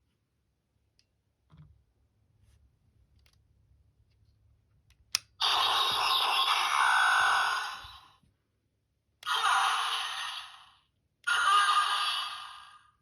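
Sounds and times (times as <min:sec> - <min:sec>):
toy electronic sound effect: 0:05.4 - 0:08.0, 0:09.2 - 0:10.7, 0:11.3 - 0:12.8.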